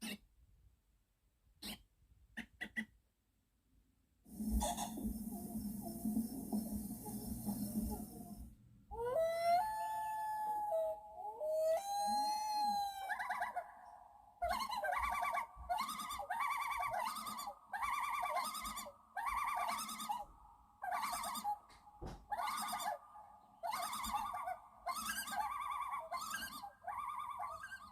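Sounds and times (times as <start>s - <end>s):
animal trilled calls: 4.5s - 8.4s, 11.6s - 13.7s, 14.4s - 21.6s, 22.3s - 27.9s.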